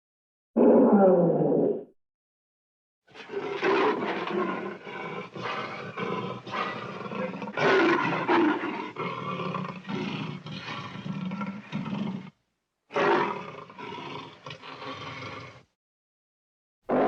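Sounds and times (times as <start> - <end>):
lion roaring: 3.1 - 15.7.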